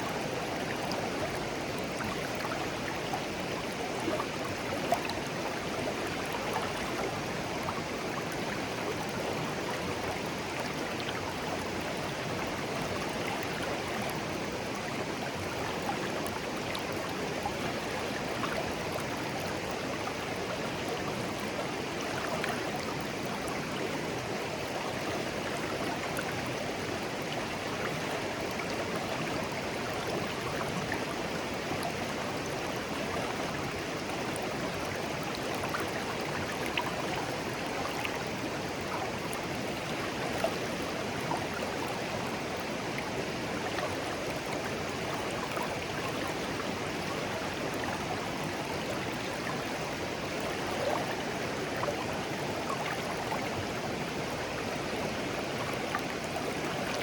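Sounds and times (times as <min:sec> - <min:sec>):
stream flowing over stones: 0:00.0 - 0:57.0
water plinks and splashes: 0:43.6 - 0:54.6.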